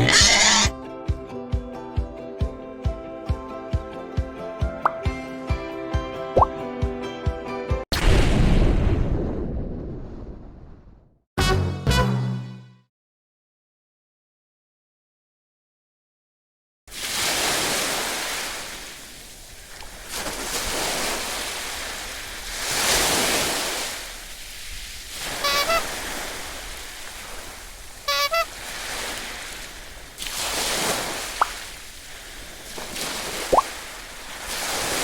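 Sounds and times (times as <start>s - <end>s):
short pitched calls: 0.0s - 0.7s, 25.3s - 26.0s, 28.0s - 28.7s
surf washing in: 16.9s - 35.0s.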